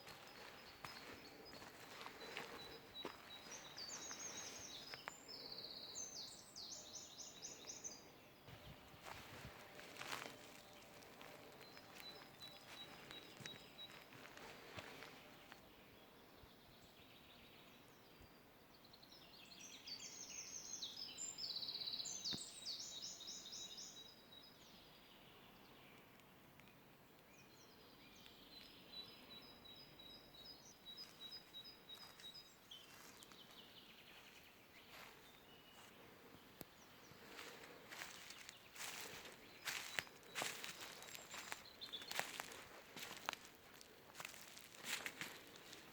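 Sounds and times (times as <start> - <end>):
songbirds trilling: 0.0 - 45.9.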